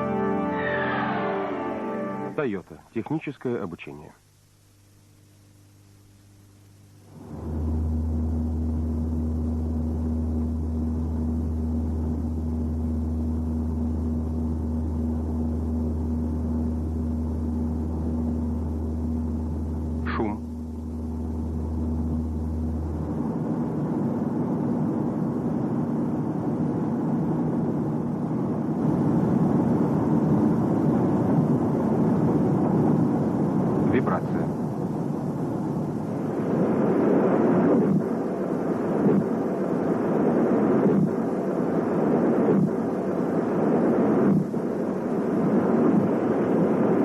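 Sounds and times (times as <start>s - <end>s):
low rumbling drone: 0.0s - 2.5s, 7.0s - 47.0s
constant hum-like tone: 0.0s - 47.0s
vehicle rumbling: 7.1s - 24.1s.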